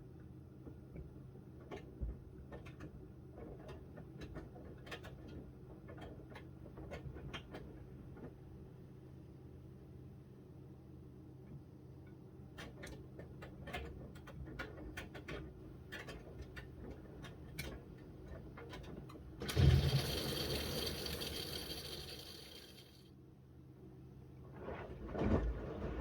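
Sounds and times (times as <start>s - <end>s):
washing machine motor hum: 19.2s - 23.0s.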